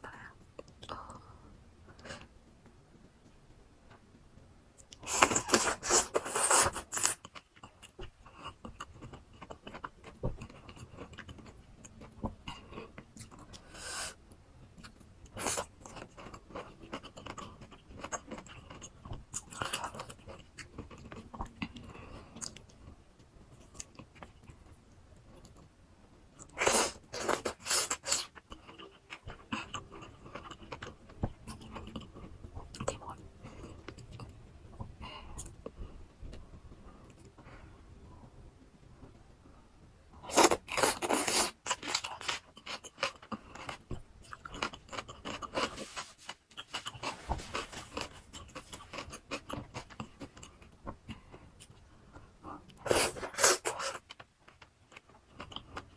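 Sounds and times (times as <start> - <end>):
chewing: 40.3 - 51.8.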